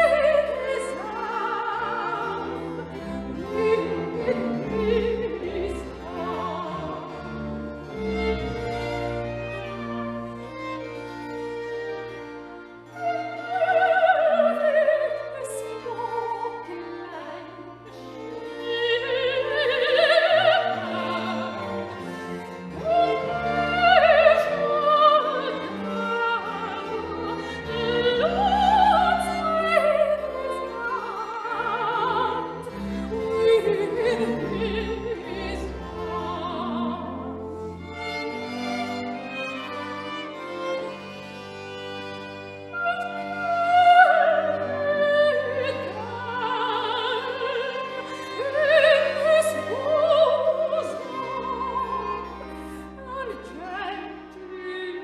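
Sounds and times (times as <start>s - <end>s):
soprano singing with vibrato: 0.0s - 7.1s, 13.0s - 21.8s, 22.7s - 37.6s, 42.7s - 55.0s
string orchestra: 0.0s - 55.0s.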